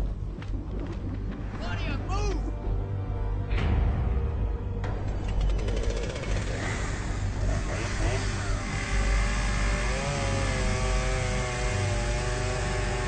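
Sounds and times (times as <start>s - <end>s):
chainsaw engine revving: 5.2s - 13.0s.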